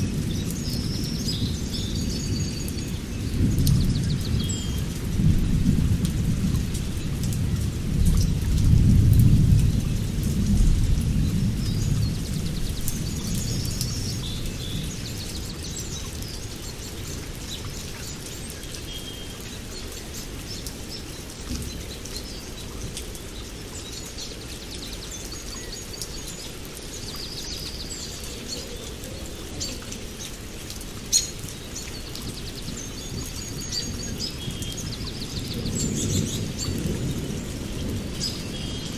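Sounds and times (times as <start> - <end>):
steady rain: 0.0 - 38.9
thunder rumbling: 3.3 - 15.6, 34.3 - 38.9.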